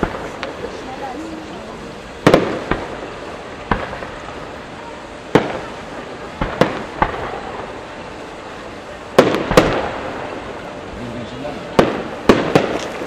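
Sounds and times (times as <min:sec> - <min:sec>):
firework shells bursting: 0:00.0 - 0:01.1, 0:02.1 - 0:04.7, 0:05.3 - 0:08.0, 0:08.6 - 0:10.8, 0:11.7 - 0:13.0.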